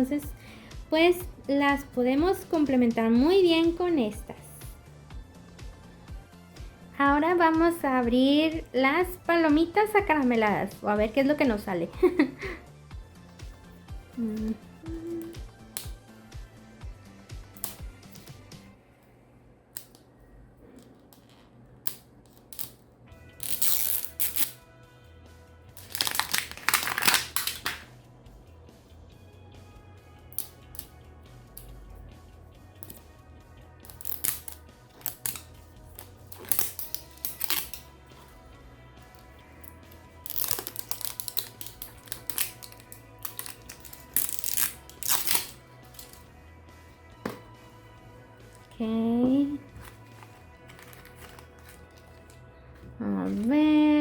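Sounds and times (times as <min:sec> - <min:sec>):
quiet background music: 0:00.0 - 0:54.0
plastic wrapper crinkling and tearing: 0:25.8 - 0:27.9, 0:33.9 - 0:37.9, 0:40.2 - 0:46.2, 0:49.8 - 0:52.4.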